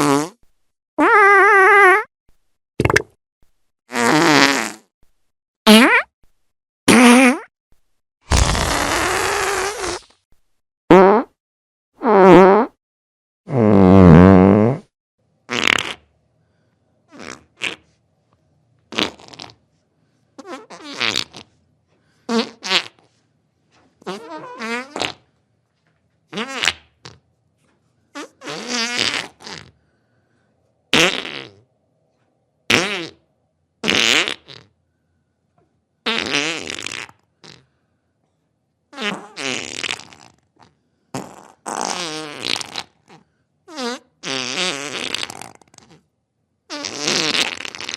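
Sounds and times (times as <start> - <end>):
fart sounds: 0.0 - 2.1, 2.8 - 3.1, 3.9 - 4.9, 5.7 - 6.2, 6.9 - 7.5, 8.3 - 10.3, 10.9 - 11.4, 12.0 - 12.8, 13.5 - 14.9, 15.5 - 16.1, 17.1 - 17.9, 18.9 - 19.6, 20.4 - 21.6, 22.3 - 23.1, 24.0 - 25.3, 26.3 - 27.2, 28.1 - 29.8, 30.9 - 31.7, 32.7 - 34.8, 36.0 - 37.7, 38.9 - 46.1, 46.7 - 47.9.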